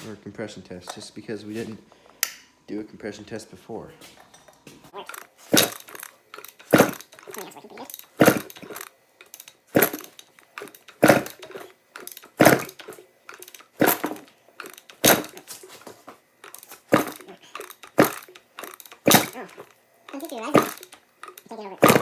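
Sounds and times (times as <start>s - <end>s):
kickstarter clunk with rattle: 5.0s - 22.0s.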